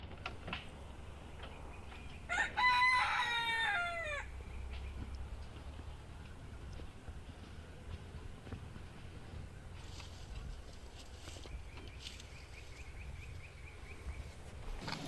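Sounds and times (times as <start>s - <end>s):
rooster crowing: 2.0s - 4.5s
steady low rumble: 4.1s - 15.0s.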